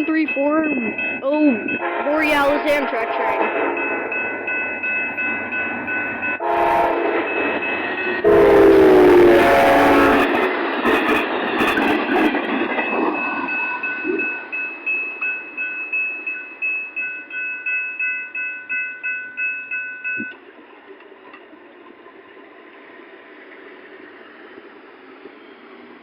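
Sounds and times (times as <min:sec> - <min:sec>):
crossing signal bell ringing: 0:00.0 - 0:20.5
train rumble: 0:00.0 - 0:26.0
train horn blasts: 0:01.8 - 0:03.8, 0:06.4 - 0:07.4, 0:08.2 - 0:11.8.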